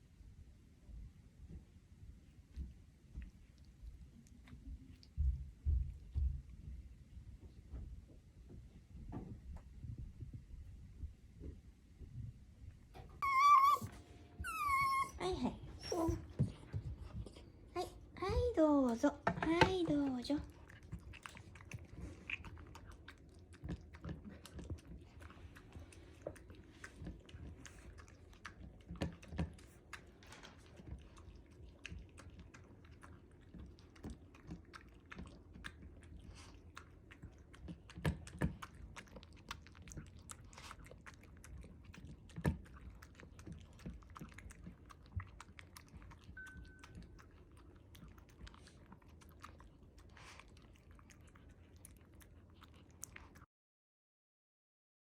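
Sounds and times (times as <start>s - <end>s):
dog chewing food: 18.3s - 53.5s.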